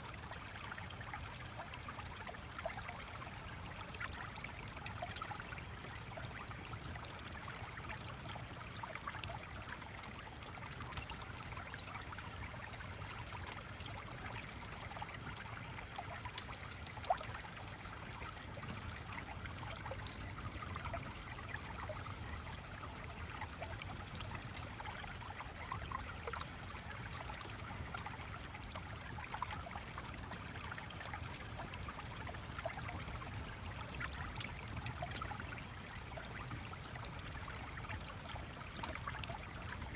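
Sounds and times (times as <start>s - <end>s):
stream water trickling: 0.0s - 39.9s.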